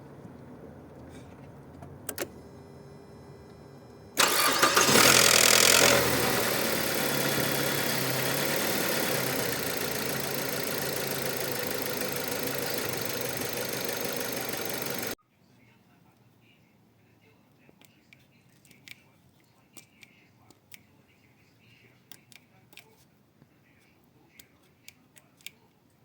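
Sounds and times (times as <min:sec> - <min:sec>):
car engine starting and idling: 0:00.0 - 0:15.2
engine rattling clatter: 0:00.0 - 0:15.2
clicks: 0:00.1 - 0:02.5.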